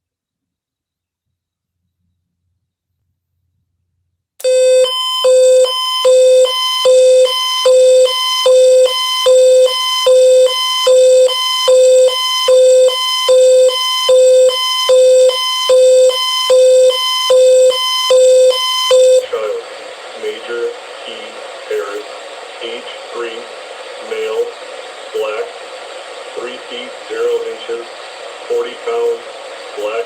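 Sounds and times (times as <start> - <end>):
loud electronic beeping: 4.4 - 19.3.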